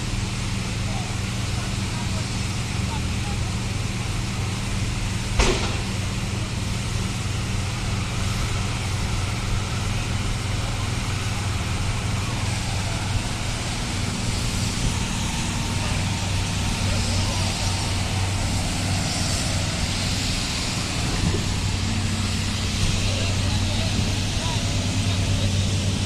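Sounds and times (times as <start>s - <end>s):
street traffic: 0.0s - 26.0s
vehicle engines droning: 0.0s - 26.0s
sharp crack: 5.4s - 6.1s.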